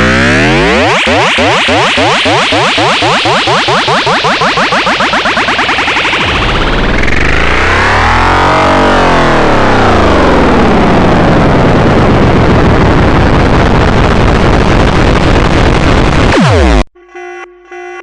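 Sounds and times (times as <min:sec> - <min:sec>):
distorted electronic alarm buzz: 0:00.0 - 0:08.8, 0:16.3 - 0:18.0.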